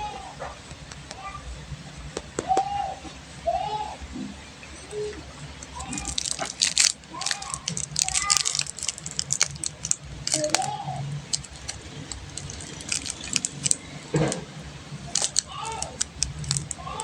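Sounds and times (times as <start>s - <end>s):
plastic candy wrappers crinkling: 5.6s - 17.0s.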